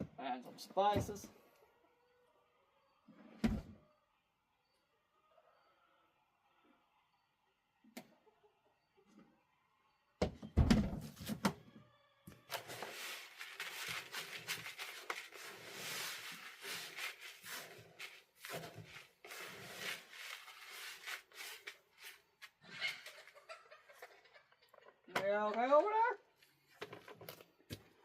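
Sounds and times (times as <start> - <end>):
dry feed rattling in container: 12.6 - 22.2.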